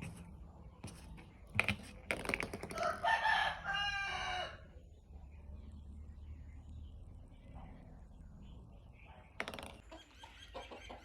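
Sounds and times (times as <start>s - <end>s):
rooster crowing: 2.8s - 4.6s.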